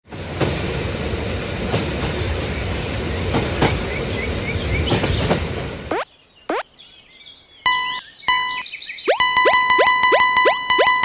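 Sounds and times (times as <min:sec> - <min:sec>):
train rumbling on rails: 0:00.1 - 0:05.9.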